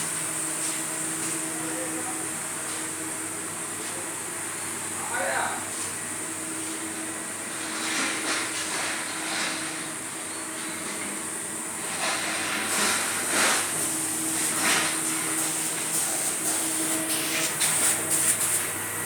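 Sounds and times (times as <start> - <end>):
spray gun hissing: 14.0 - 19.0.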